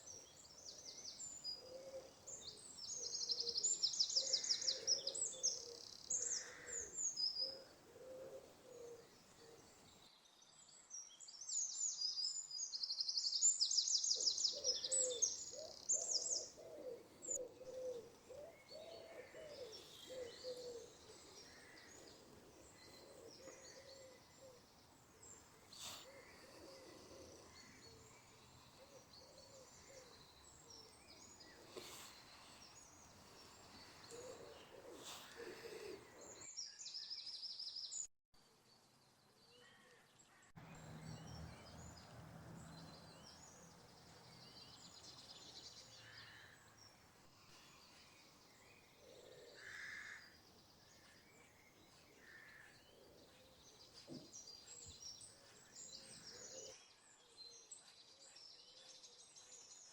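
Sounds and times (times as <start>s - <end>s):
bird cooing calls: 0.0s - 9.9s, 14.0s - 36.5s, 41.5s - 56.8s
bird chirps: 13.1s - 36.7s
birds singing high trills: 14.0s - 36.4s.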